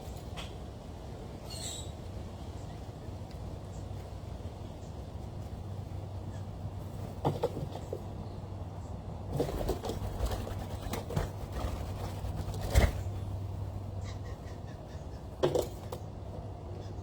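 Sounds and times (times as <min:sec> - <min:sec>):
birds knocking and tapping: 0:07.0 - 0:08.2, 0:09.3 - 0:13.2, 0:15.2 - 0:16.2.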